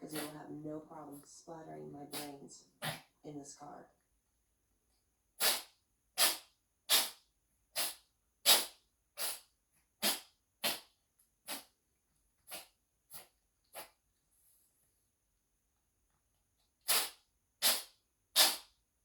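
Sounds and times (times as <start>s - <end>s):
pet sneezing: 0.0s - 0.4s, 2.1s - 3.1s, 5.4s - 7.2s, 7.8s - 11.7s, 12.5s - 13.9s, 16.8s - 18.7s.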